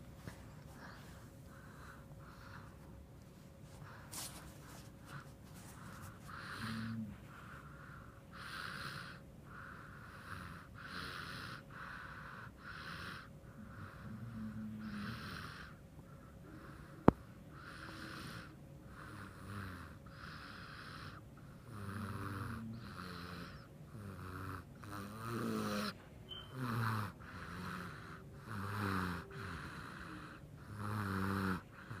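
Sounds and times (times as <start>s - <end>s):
person snoring: 6.2s - 7.2s, 12.7s - 15.8s, 17.6s - 26.0s, 26.6s - 32.0s.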